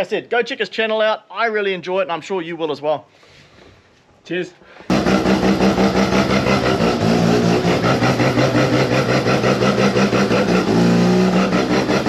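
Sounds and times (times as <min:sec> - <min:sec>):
car engine running: 0:04.9 - 0:12.0.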